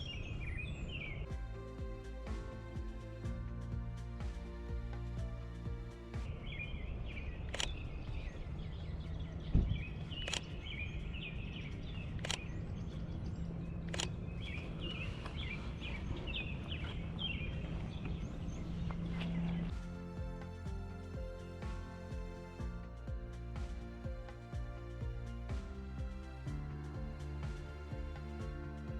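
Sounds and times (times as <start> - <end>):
steady low hum: 1.2 - 28.9
songbirds chirping: 6.2 - 19.8.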